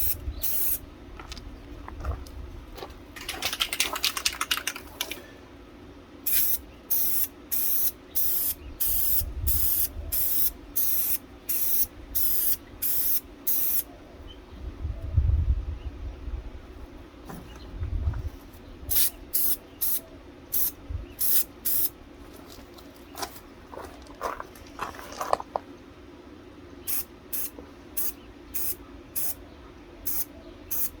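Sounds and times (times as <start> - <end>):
spray paint can hissing: 0.0 - 0.8, 6.3 - 13.8, 18.9 - 21.9, 26.9 - 29.4, 30.1 - 31.0.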